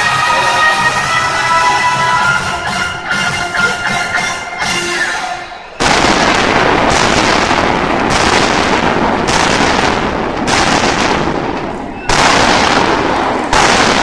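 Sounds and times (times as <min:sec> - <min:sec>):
fireworks crackling and banging: 0:05.8 - 0:14.0.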